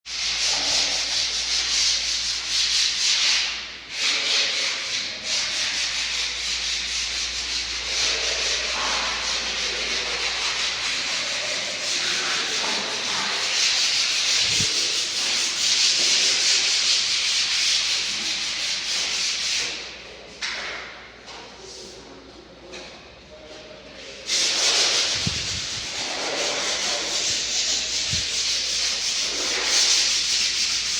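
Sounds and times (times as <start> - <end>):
rough scraping noise: 7.8 - 16.9, 24.3 - 30.9.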